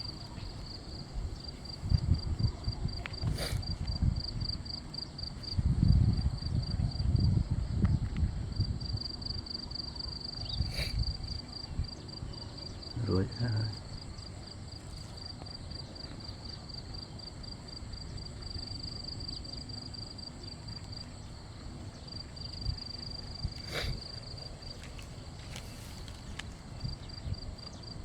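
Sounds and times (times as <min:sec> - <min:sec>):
insect trilling: 0:09.3 - 0:27.6.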